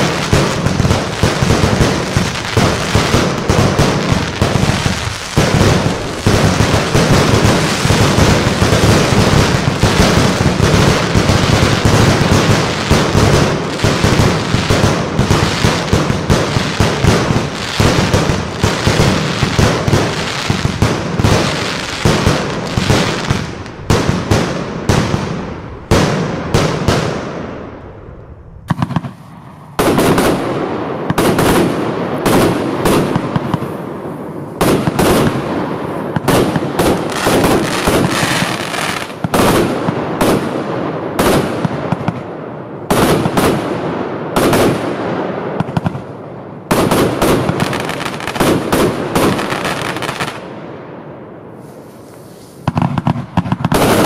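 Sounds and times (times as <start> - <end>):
firework bangs: 0.0 - 54.0
small firework pops: 28.7 - 30.0, 52.0 - 54.0.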